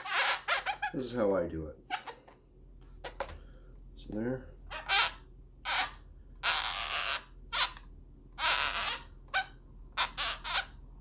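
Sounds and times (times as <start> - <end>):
marker squeaking on balloon: 0.0 - 1.2, 1.8 - 2.3, 2.9 - 3.3, 4.7 - 10.8.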